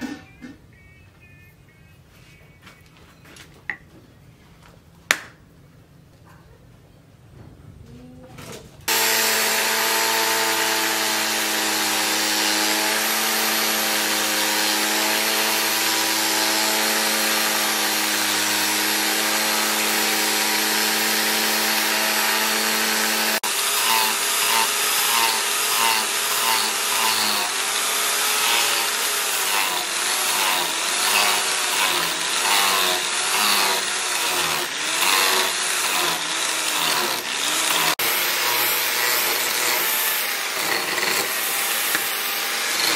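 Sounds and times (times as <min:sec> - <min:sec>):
power tool grinding: 0:08.9 - 0:42.9
power tool motor humming: 0:08.9 - 0:42.9.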